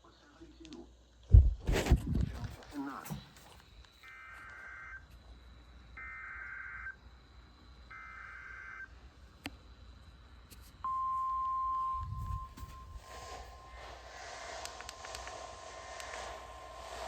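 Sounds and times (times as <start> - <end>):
steady attention tone: 10.8 - 17.0.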